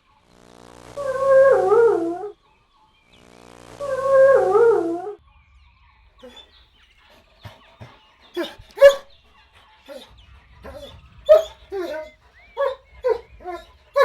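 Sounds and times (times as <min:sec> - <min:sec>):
puppies yipping and barking: 0:07.5 - 0:09.1, 0:09.9 - 0:14.0.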